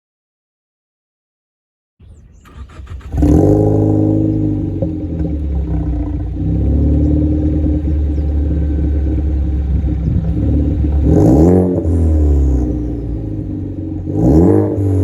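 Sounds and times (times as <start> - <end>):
engine throttle blip: 2.0 - 13.6
car engine idling: 2.0 - 15.0.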